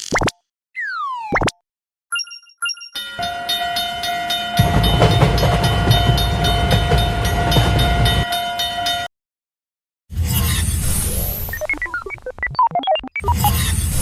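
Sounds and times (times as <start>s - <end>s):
railway crossing alarm clanging: 2.7s - 9.1s
train rumbling past: 3.2s - 9.1s.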